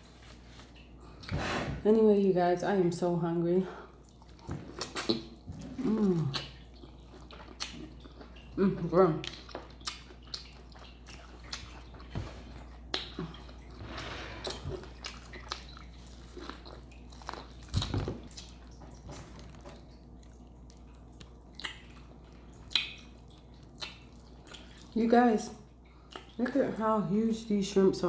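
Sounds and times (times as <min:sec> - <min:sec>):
wet chewing and biting: 0:04.1 - 0:08.6, 0:09.2 - 0:25.0.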